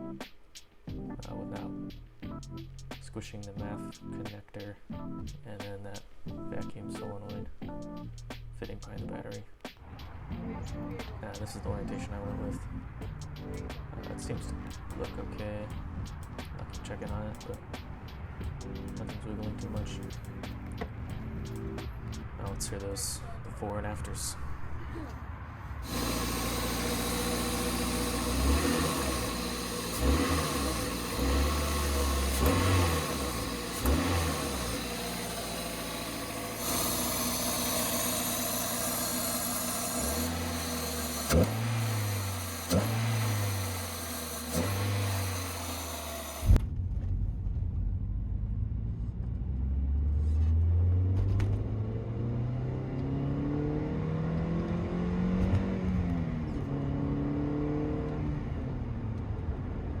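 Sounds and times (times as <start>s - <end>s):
car engine revving: 9.8s - 60.0s.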